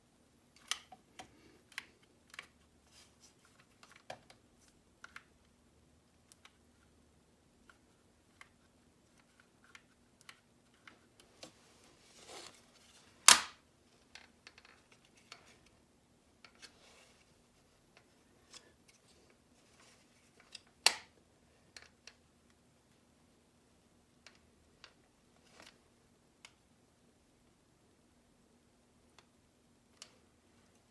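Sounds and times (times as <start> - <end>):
sharp plastic snaps: 0.6 - 2.6, 13.2 - 13.6, 20.6 - 21.1.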